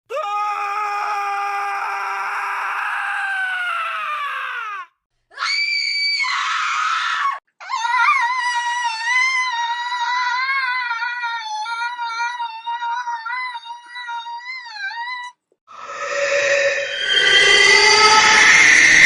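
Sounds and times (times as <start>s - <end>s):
cartoon high-pitched screams: 0.1s - 11.6s, 15.9s - 19.0s.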